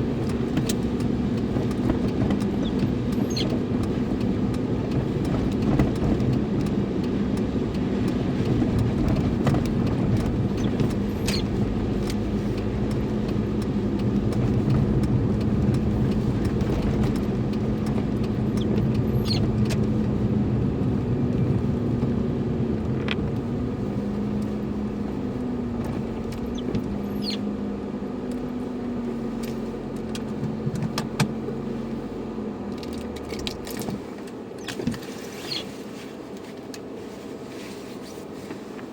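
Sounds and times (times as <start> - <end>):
car engine and road rumble: 0.0 - 38.9
light clicks and ticks: 0.2 - 20.2.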